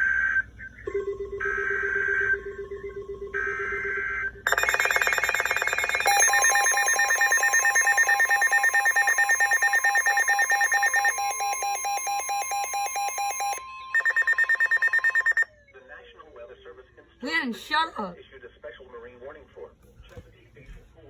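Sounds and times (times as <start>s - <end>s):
steady high warning tone: 2.9s - 15.7s
screechy data tones: 4.5s - 15.4s
rapidly pulsing alert tone: 4.5s - 15.5s.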